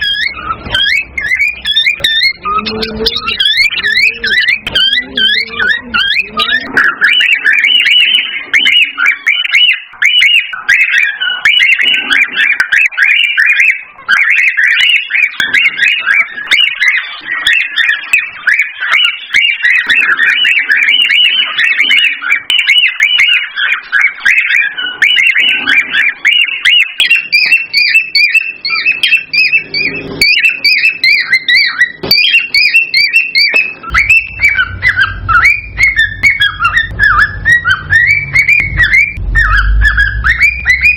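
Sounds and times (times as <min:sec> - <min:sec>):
cockatiels chirping and whistling: 0:00.0 - 0:40.9
low hum: 0:33.9 - 0:40.9.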